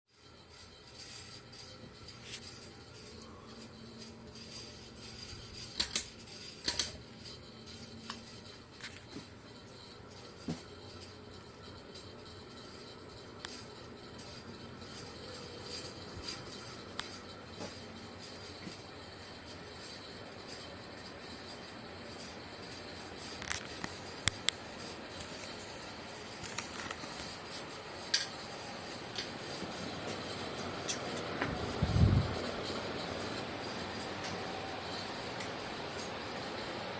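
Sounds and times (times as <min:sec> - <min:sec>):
ceiling fan humming: 0:00.1 - 0:36.9
metallic clicks and ticks: 0:04.5 - 0:09.2, 0:23.3 - 0:32.5.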